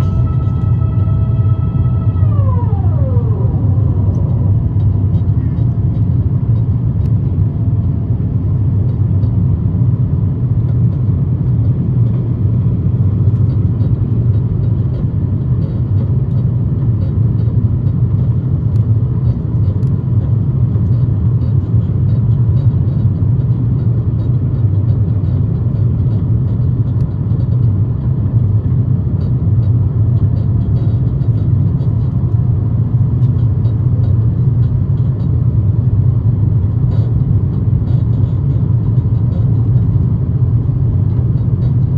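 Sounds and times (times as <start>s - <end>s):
airliner cabin rumble: 0.0s - 41.9s.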